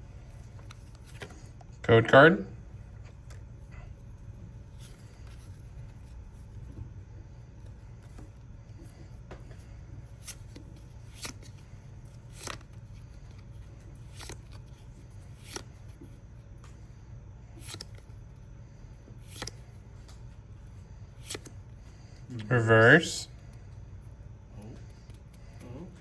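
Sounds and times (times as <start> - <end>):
steady low hum: 0.0 - 26.0
trading cards snapping: 10.2 - 11.6, 12.2 - 16.8, 17.6 - 18.1, 19.2 - 20.2, 21.2 - 21.6.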